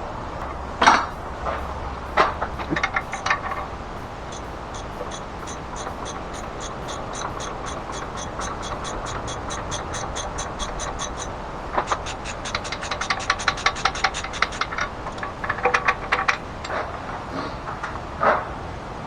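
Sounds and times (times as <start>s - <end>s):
ratchet wrench clicking: 0.4s - 16.8s.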